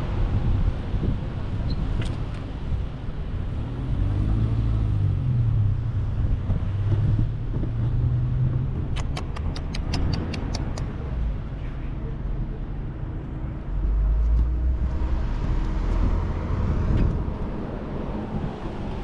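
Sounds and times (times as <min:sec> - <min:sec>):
vehicle engine rumbling: 0:00.0 - 0:19.0
sharp ticks: 0:08.9 - 0:11.0.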